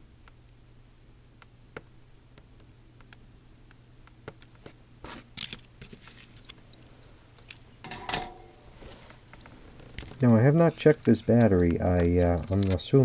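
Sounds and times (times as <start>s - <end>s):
hands handling small parts: 4.4s - 13.0s.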